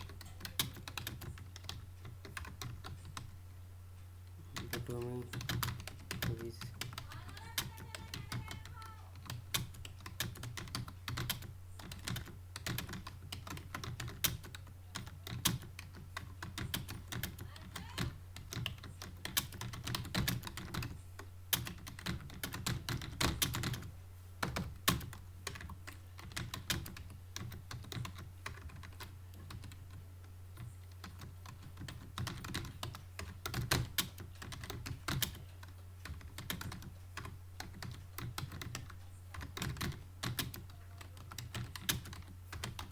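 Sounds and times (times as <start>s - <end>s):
fast typing on keyboard: 0.0s - 3.4s, 4.4s - 42.9s
steady low hum: 0.0s - 42.9s.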